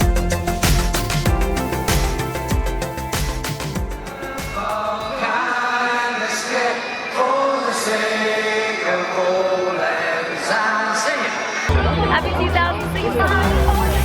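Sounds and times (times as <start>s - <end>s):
deep bass: 0.0s - 5.2s, 11.7s - 14.0s
choir-like sung notes: 0.0s - 14.0s.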